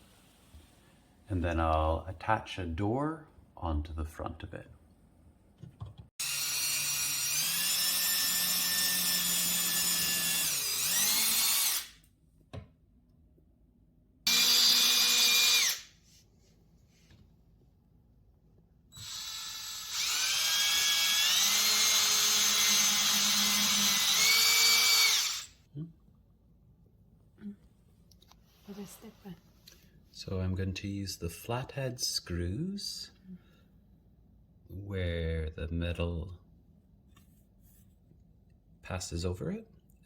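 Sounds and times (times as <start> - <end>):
power drill driving screws into wood: 6.2 - 12.0, 14.3 - 15.9, 19.0 - 25.5.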